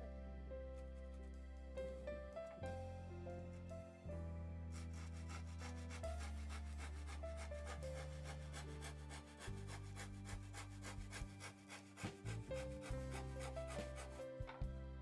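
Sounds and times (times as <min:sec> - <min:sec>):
soft background music: 0:00.0 - 0:15.0
hand tool scraping wood: 0:04.7 - 0:14.6.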